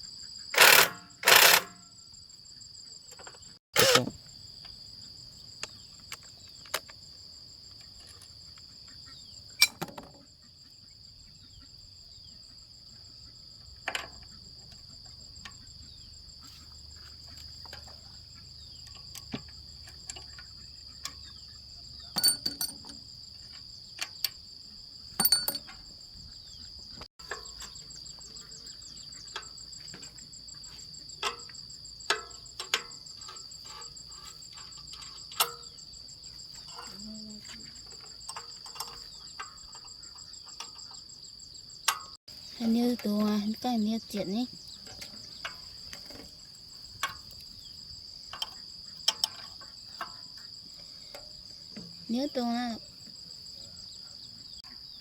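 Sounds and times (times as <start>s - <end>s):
insects trilling: 0.0s - 55.0s
hand tools clicking and knocking: 0.6s - 1.8s, 9.6s - 10.2s, 22.1s - 23.1s, 25.2s - 25.9s, 27.2s - 28.6s, 29.2s - 41.0s, 41.8s - 43.5s, 44.8s - 52.0s.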